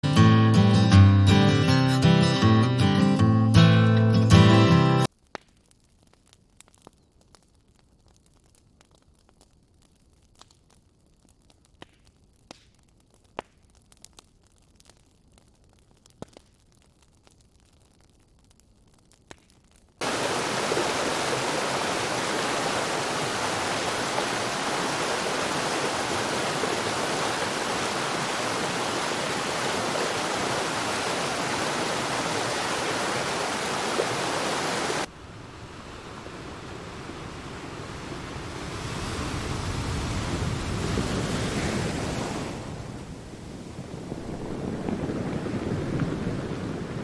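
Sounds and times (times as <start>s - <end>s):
stream water rushing: 20.0s - 43.4s
ocean surf: 20.0s - 47.0s.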